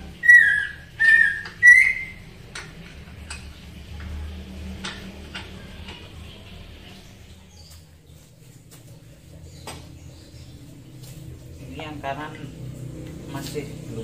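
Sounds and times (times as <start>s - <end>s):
hand tool squeaks: 0.2s - 2.3s.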